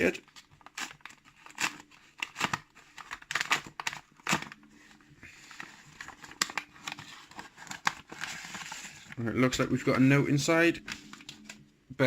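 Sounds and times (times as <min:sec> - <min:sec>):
paper envelope tearing: 0:00.2 - 0:04.6, 0:05.6 - 0:09.2.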